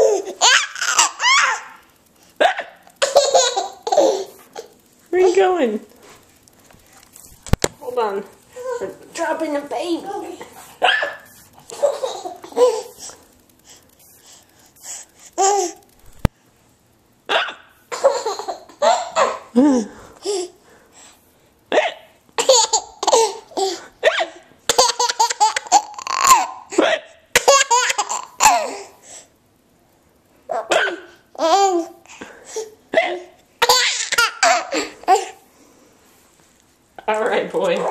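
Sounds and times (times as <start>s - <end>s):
baby laughing: 0.0s - 1.8s, 2.4s - 4.7s, 10.8s - 13.2s, 15.4s - 15.8s, 17.3s - 20.6s, 22.4s - 23.8s, 24.7s - 26.7s, 27.4s - 28.9s, 31.4s - 32.0s, 33.6s - 35.4s
woman hiccuping: 2.4s - 2.8s, 10.8s - 11.3s, 17.3s - 17.7s, 21.7s - 22.2s, 30.6s - 31.1s.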